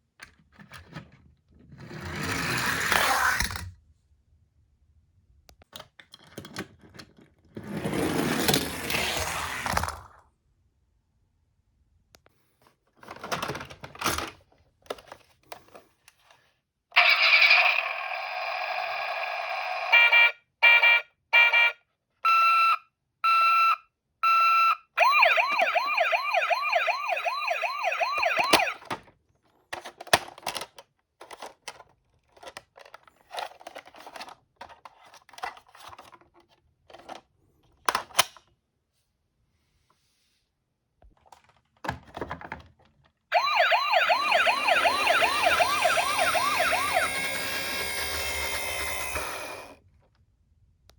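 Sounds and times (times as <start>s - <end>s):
ambulance siren: 19.8s - 21.7s, 24.2s - 28.9s, 43.3s - 49.8s
toy cars clattering down a slope: 44.2s - 49.8s.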